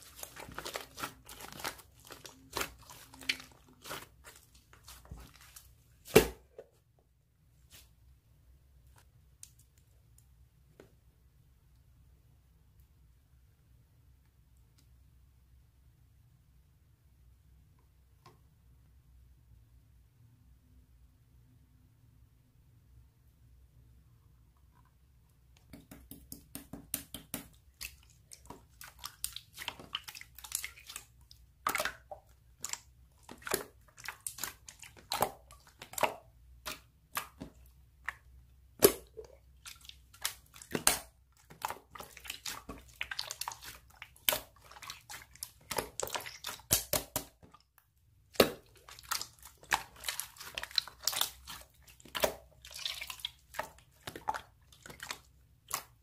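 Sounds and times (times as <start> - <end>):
slime squished by hand: 0.0 - 6.5, 26.0 - 47.6, 48.3 - 56.0.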